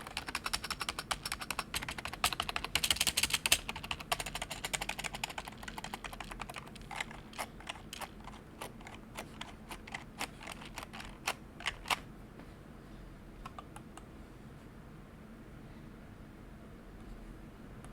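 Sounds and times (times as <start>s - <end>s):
keyboard typing: 0.0s - 12.0s.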